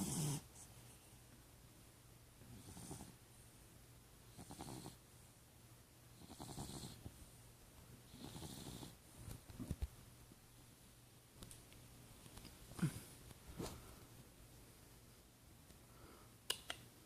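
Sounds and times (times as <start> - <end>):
cat snoring: 0.0 - 0.5, 2.5 - 3.2, 4.3 - 5.0, 6.2 - 7.0, 8.1 - 9.0.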